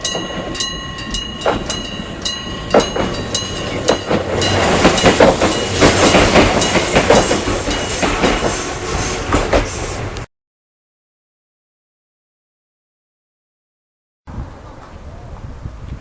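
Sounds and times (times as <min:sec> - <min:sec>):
level crossing bell ringing: 0:00.0 - 0:05.8
train wheels clattering over rail joints: 0:00.0 - 0:10.2.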